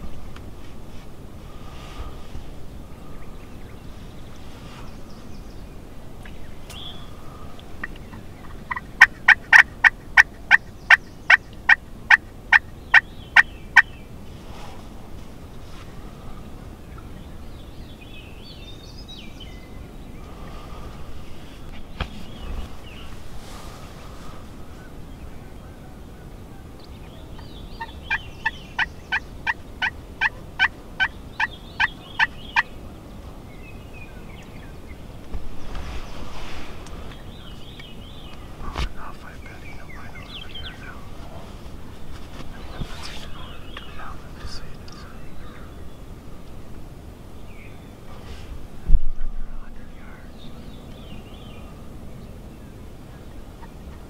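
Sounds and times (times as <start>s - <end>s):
turkey yelps: 28.8s - 32.7s.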